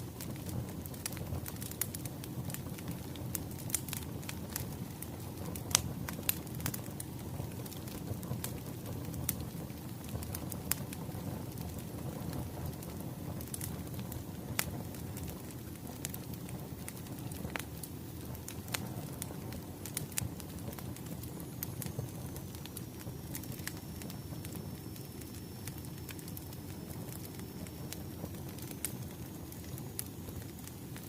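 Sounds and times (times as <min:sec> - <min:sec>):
low rumble of flames: 0:00.0 - 0:31.0.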